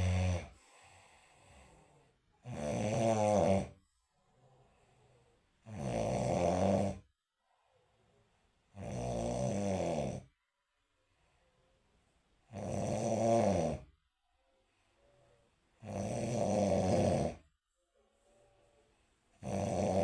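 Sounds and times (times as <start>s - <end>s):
person snoring: 0.0s - 3.8s, 5.6s - 7.1s, 8.7s - 10.3s, 12.5s - 13.9s, 15.8s - 17.5s, 19.3s - 20.0s.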